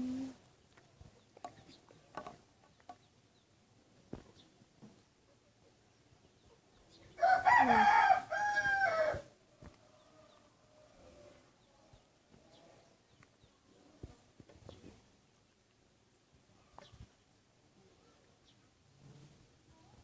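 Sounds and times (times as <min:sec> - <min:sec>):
rooster crowing: 0:07.2 - 0:09.3.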